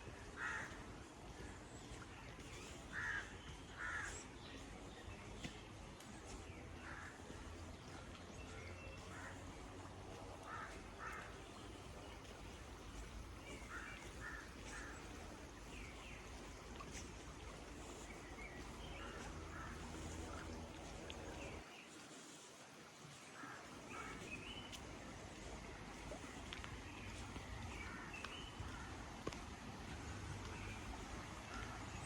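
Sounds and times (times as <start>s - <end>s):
crow-like caws: 0.4s - 0.8s, 2.9s - 4.2s, 10.4s - 11.4s, 13.6s - 15.2s
low outdoor rumble: 4.9s - 21.6s
distant birds calling: 10.4s - 21.7s.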